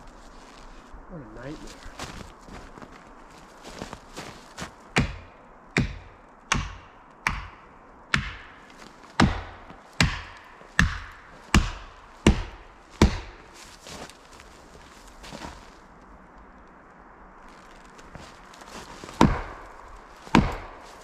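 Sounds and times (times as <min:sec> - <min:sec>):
axe chopping into tree trunk: 0:05.0 - 0:08.6, 0:09.2 - 0:13.4, 0:19.0 - 0:21.0.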